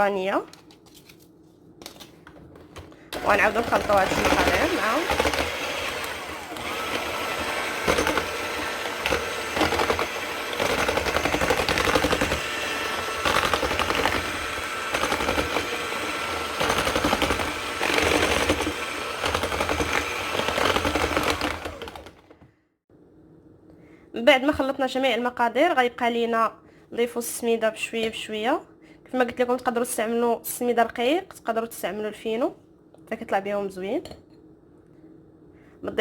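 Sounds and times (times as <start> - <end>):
whisk rattling in a bowl: 3.2 - 21.7.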